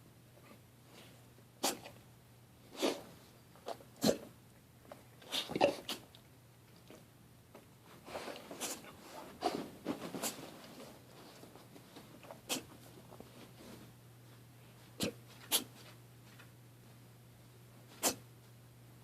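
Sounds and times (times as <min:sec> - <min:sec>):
person sneezing: 0:15.0 - 0:15.7, 0:18.0 - 0:18.2.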